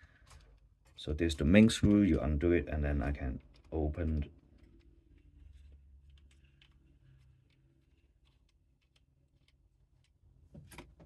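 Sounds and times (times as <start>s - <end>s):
plastic parts clicking: 2.9s - 11.0s.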